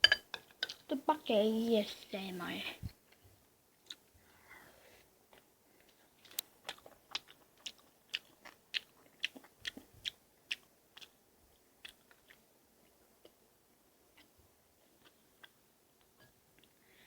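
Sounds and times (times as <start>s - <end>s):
crunchy chewing: 5.3s - 13.4s.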